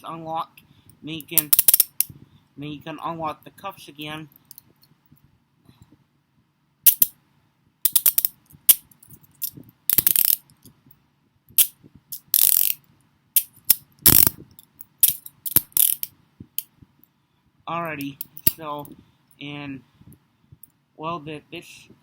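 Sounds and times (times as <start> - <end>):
handcuffs ratcheting clicks: 1.4 - 2.1, 6.9 - 7.1, 7.9 - 10.6, 11.6 - 12.8, 13.4 - 16.1, 18.0 - 18.6
metal clinks: 18.2 - 18.6.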